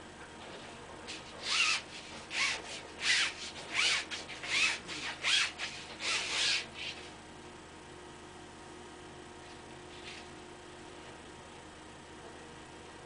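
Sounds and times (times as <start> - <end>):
sandpaper rubbing strokes: 1.1 - 7.1.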